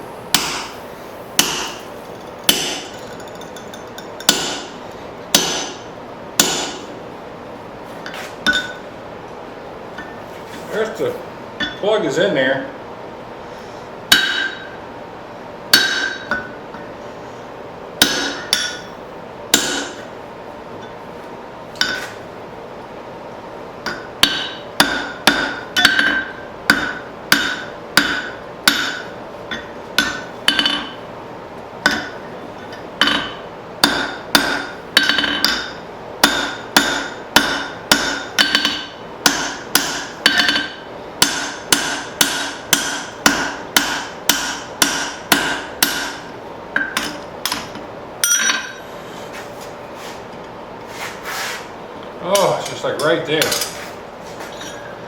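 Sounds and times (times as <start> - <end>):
hammer striking on anvil: 0.3 - 0.8, 1.4 - 1.8, 2.5 - 5.8, 6.4 - 6.9, 8.4 - 8.8, 11.6 - 11.8, 14.1 - 14.8, 15.7 - 16.9, 18.0 - 18.9, 19.5 - 20.0, 21.8 - 22.2, 23.8 - 31.0, 31.8 - 32.2, 33.0 - 48.8, 52.3 - 53.8.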